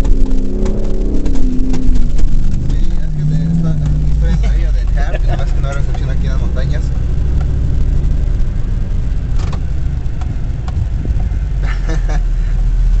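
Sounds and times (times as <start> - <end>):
truck engine and road rumble: 0.0 - 13.0.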